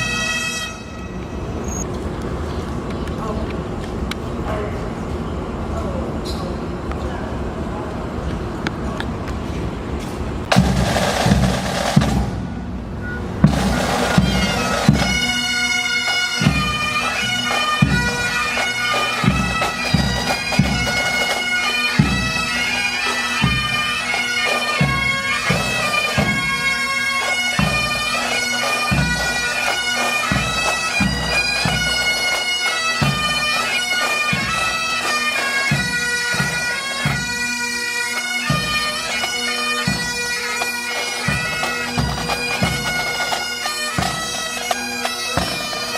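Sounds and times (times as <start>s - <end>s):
bagpipes playing melody over drone: 0.0s - 1.7s, 13.0s - 45.9s
drums beating: 10.5s - 37.4s, 41.0s - 45.9s.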